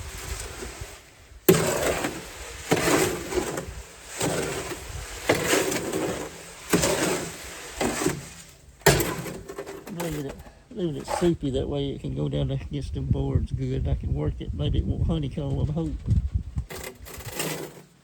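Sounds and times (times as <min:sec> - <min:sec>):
tool stroking wet concrete: 0:00.0 - 0:11.4, 0:16.7 - 0:18.0.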